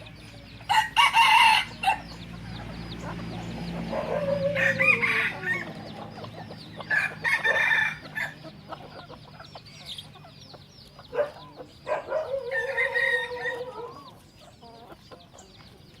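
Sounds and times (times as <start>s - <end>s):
chickens clucking: 0.0s - 16.0s
rooster crowing: 0.7s - 2.1s, 3.9s - 6.0s, 6.9s - 8.4s, 12.1s - 14.1s.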